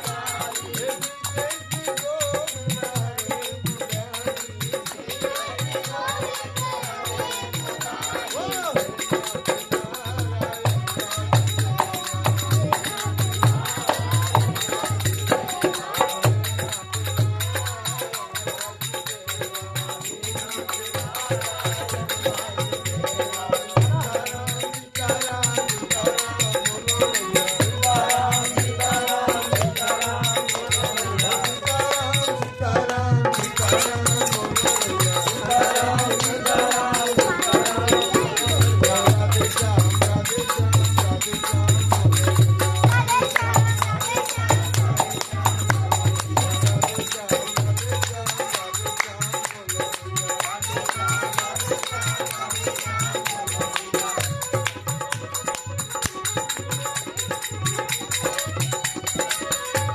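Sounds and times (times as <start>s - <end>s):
jingling percussion: 0.0s - 59.9s
person singing: 20.2s - 55.4s.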